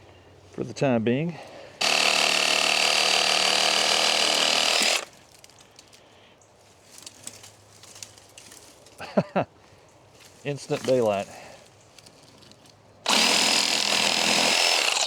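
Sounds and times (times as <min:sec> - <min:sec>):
electric power tool running: 0:01.8 - 0:05.1, 0:13.1 - 0:15.0.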